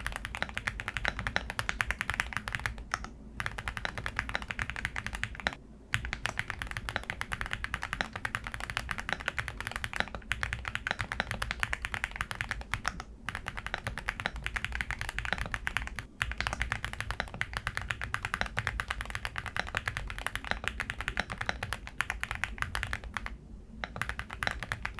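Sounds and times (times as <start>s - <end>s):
typing on mechanical keyboard: 0.0s - 24.9s.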